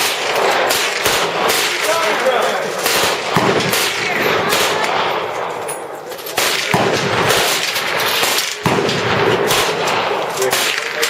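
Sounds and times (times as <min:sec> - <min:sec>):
machine-gun fire: 0:00.0 - 0:05.5, 0:06.4 - 0:11.0.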